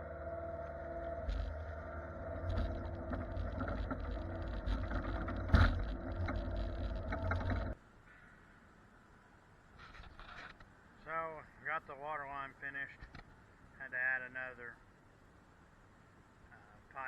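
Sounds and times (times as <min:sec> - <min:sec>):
heavy equipment engine running: 0:00.0 - 0:07.8.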